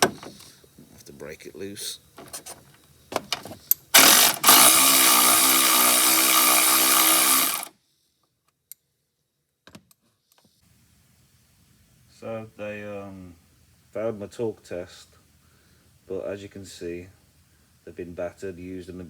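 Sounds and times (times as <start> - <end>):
electric ratchet whining and rattling: 3.9 - 7.7.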